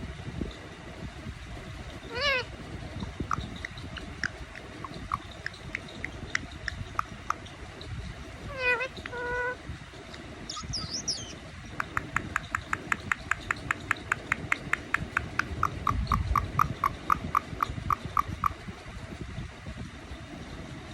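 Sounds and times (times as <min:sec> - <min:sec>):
parrot chirps: 0:02.0 - 0:02.5, 0:03.2 - 0:07.5, 0:08.4 - 0:09.6, 0:10.5 - 0:18.6
parrot calling: 0:02.0 - 0:02.6, 0:03.2 - 0:06.0, 0:08.4 - 0:09.6, 0:10.5 - 0:18.6
parrot meow-like call: 0:02.1 - 0:02.5, 0:08.5 - 0:09.6.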